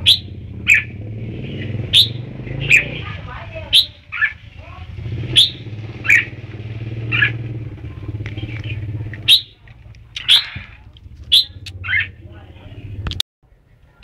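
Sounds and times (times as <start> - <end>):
bird calling short sharp notes: 0.0 - 4.4, 5.3 - 6.4, 8.4 - 9.6, 10.2 - 12.2.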